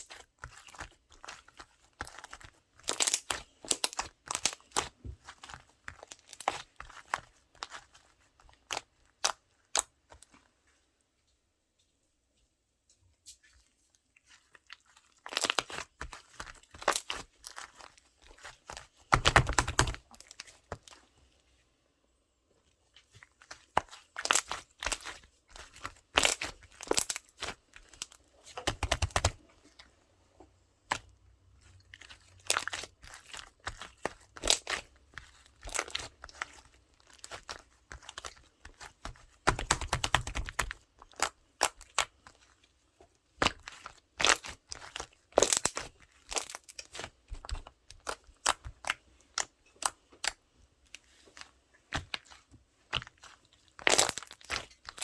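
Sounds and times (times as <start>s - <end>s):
slime crackling and popping: 0.0s - 8.0s, 15.1s - 21.0s, 23.4s - 29.4s, 31.9s - 42.4s, 43.4s - 50.4s, 51.9s - 55.0s.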